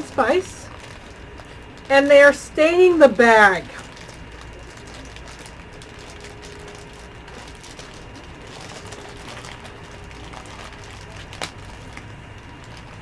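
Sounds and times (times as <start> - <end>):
room hum: 0.0 - 13.0.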